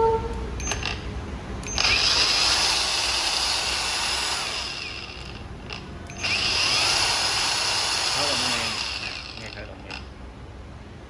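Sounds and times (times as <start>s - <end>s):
power tool motor whining: 1.7s - 5.4s, 6.2s - 9.6s.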